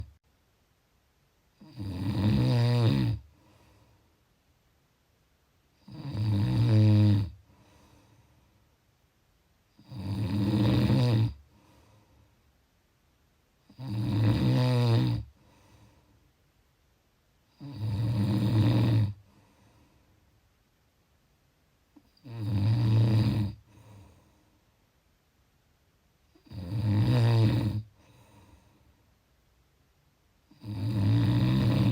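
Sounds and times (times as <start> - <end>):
person snoring: 1.6 - 3.9, 5.8 - 8.2, 9.8 - 11.9, 13.7 - 16.0, 17.5 - 19.5, 22.1 - 24.4, 26.3 - 28.7, 30.5 - 31.9
faint breath: 3.2 - 4.3, 7.4 - 8.8, 11.4 - 12.6, 15.3 - 16.4, 19.2 - 20.3, 23.6 - 24.9, 27.9 - 29.2.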